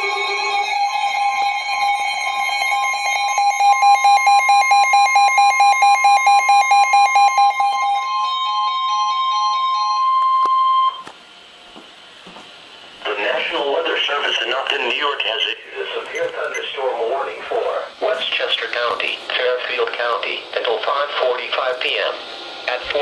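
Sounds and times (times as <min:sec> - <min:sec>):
steady high alert tones: 0:00.0 - 0:11.0.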